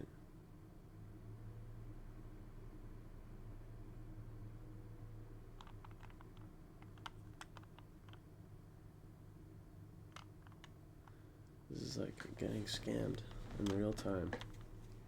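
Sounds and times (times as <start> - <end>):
puzzle cube plastic clicks: 5.6 - 8.2, 10.1 - 11.2, 13.0 - 14.8.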